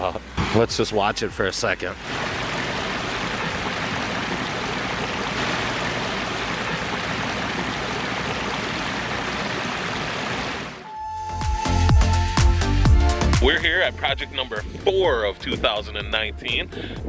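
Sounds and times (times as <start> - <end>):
water splashing over rocks: 2.0 - 10.8.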